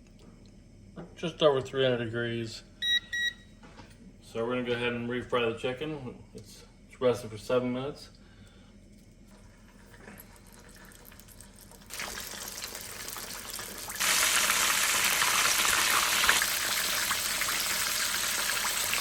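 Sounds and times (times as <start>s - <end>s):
chicken sizzling in hot oil: 9.5s - 19.0s.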